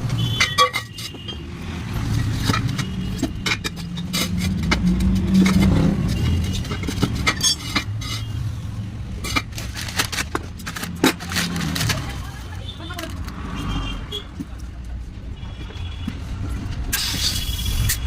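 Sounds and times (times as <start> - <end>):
sharp metallic clinks and knocks: 0.2 - 1.4, 2.2 - 8.5.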